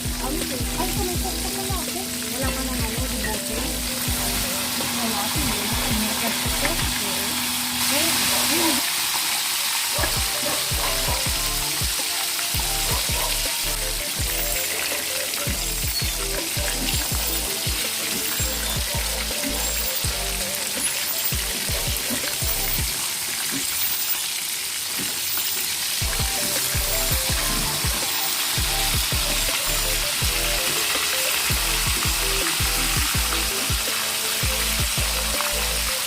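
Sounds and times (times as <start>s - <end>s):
chicken frying in hot oil: 0.0s - 36.0s.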